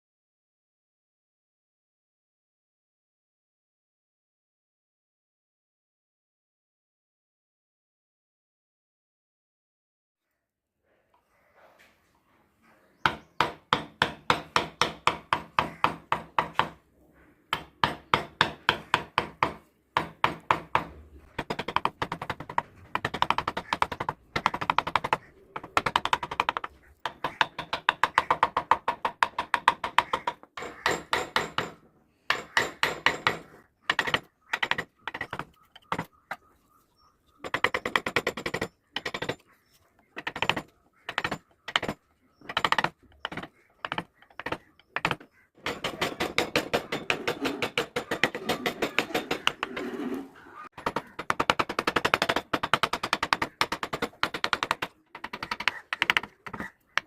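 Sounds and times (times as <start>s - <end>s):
mallet tapping chisel into wood: 13.0s - 16.8s, 17.5s - 36.1s, 50.8s - 57.0s.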